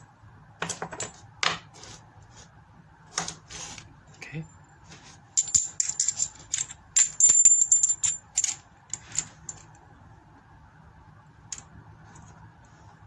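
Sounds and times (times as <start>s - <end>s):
small metal parts clinking: 5.4s - 9.8s.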